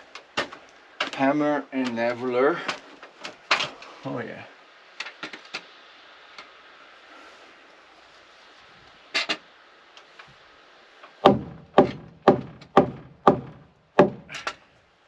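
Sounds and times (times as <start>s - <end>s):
hammer striking wood: 11.2s - 14.3s.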